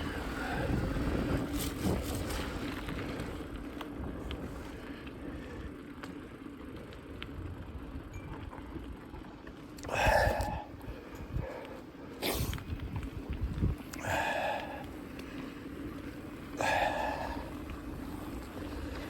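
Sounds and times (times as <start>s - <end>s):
bike tyres rumbling on trail: 0.0s - 19.0s
wind on microphone: 12.4s - 14.2s
faint ticks: 12.5s - 16.8s.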